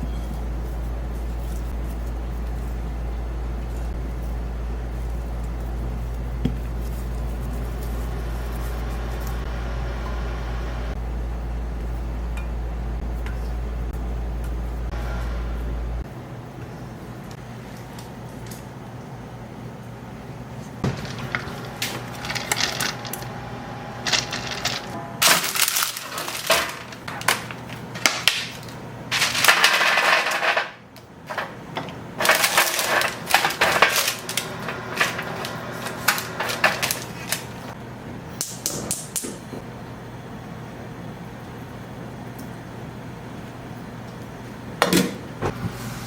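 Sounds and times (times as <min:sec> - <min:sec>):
low steady hum: 0:00.0 - 0:30.2
utensils clicking and clattering: 0:20.8 - 0:23.3, 0:24.0 - 0:37.8.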